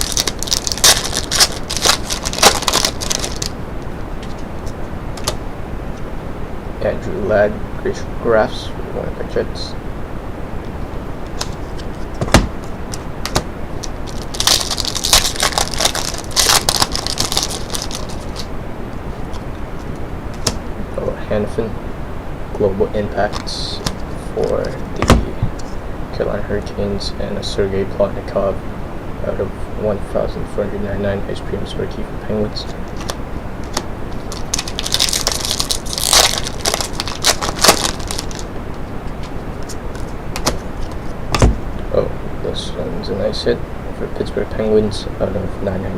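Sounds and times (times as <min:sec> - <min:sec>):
card pack wrapper crinkling: 0:00.0 - 0:03.5, 0:11.4 - 0:18.5, 0:32.8 - 0:38.5, 0:39.2 - 0:41.2
cards being handled: 0:11.3 - 0:18.5, 0:39.1 - 0:41.5.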